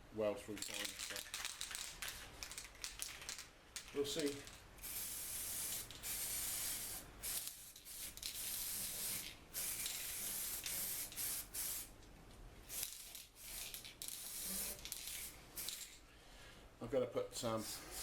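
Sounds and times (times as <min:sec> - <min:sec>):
aerosol can spraying: 0:04.8 - 0:11.9, 0:12.7 - 0:15.9.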